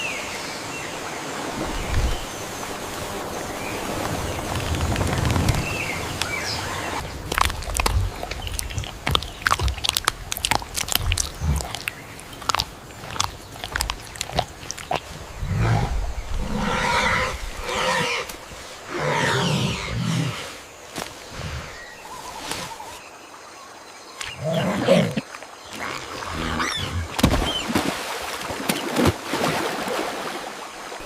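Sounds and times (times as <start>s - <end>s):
harsh animal calls: 7.2s - 20.6s.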